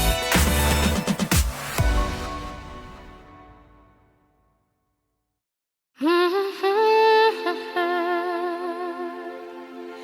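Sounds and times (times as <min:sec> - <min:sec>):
background music drum hits: 0:00.0 - 0:04.0.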